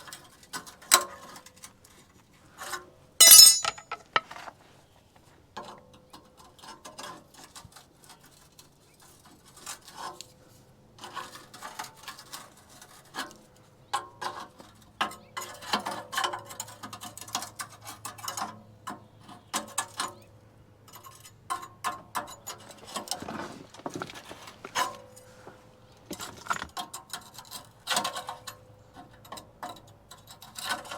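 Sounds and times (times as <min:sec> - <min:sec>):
hand tools clicking and scraping metal: 0:02.6 - 0:04.6, 0:20.9 - 0:30.9.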